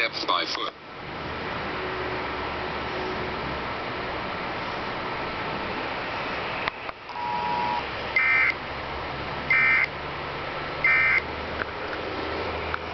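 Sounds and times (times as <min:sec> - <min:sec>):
two-tone beep: 0:07.1 - 0:08.5.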